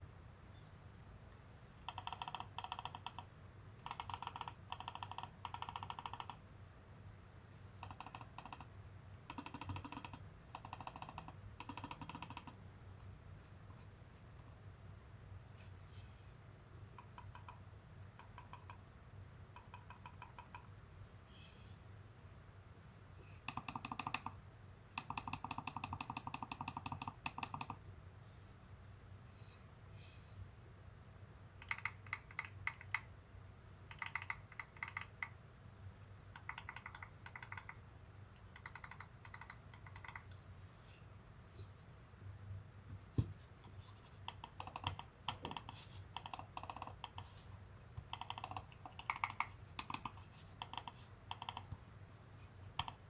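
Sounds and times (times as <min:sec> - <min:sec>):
rapid mouse clicks: 0:01.8 - 0:06.4, 0:07.8 - 0:14.6, 0:17.0 - 0:18.8, 0:19.5 - 0:20.8, 0:23.4 - 0:27.8, 0:31.6 - 0:33.2, 0:33.8 - 0:35.4, 0:36.2 - 0:40.5, 0:43.3 - 0:53.0.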